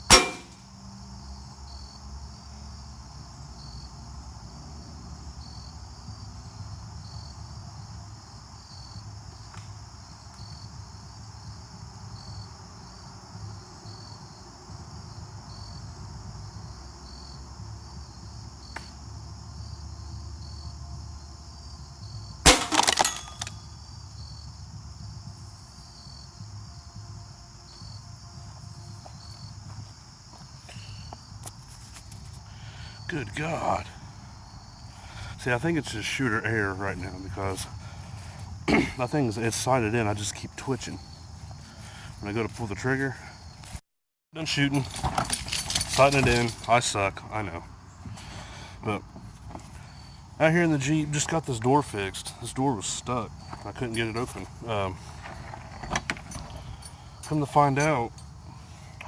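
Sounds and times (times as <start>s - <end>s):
short rattle: 0.0s - 0.7s, 44.7s - 46.8s, 53.4s - 58.3s
insects chirping: 0.0s - 43.8s, 44.4s - 59.0s
pellet rifle shot: 0.1s - 0.6s, 22.5s - 23.5s.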